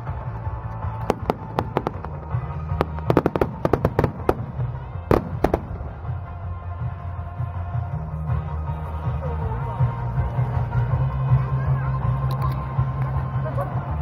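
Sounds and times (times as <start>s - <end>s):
background music: 0.0s - 14.0s
fireworks bursting: 0.3s - 6.3s.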